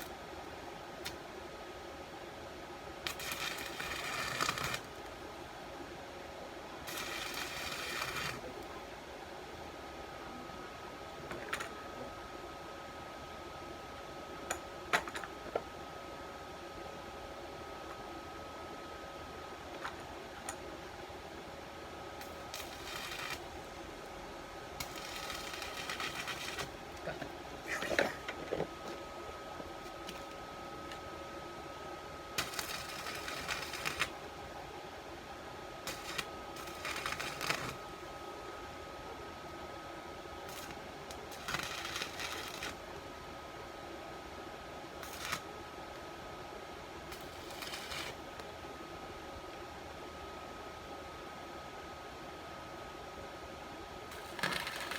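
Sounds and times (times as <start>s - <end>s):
faint high whine: 0.0s - 54.9s
welding arc crackling: 3.0s - 5.0s, 6.8s - 8.6s, 22.2s - 23.7s, 24.8s - 27.1s, 32.4s - 34.2s, 35.9s - 37.8s, 40.5s - 42.9s, 45.0s - 45.5s, 47.1s - 48.4s, 54.1s - 54.9s
machine hum: 16.6s - 49.6s.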